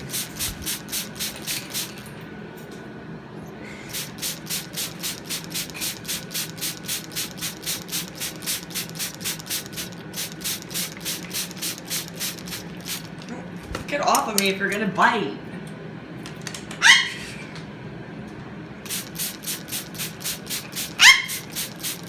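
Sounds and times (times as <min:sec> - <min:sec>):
spray bottle squirting water: 0:00.0 - 0:02.1, 0:03.9 - 0:13.3, 0:18.8 - 0:22.0.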